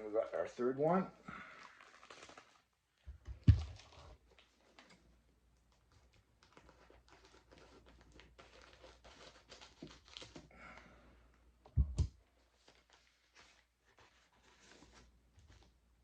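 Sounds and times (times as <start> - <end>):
plastic bag crinkling: 1.5 - 2.8
bag tearing open: 1.6 - 2.7.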